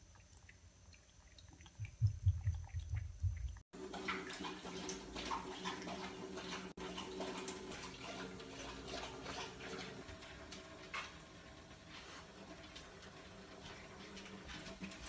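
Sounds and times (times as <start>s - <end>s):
cat lapping water: 0.0s - 10.4s
tap water running into sink: 1.3s - 15.0s.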